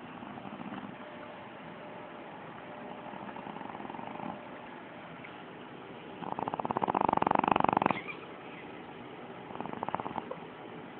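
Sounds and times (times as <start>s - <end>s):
puppy snoring: 0.0s - 1.0s, 2.8s - 4.6s, 6.2s - 8.2s, 9.4s - 10.5s.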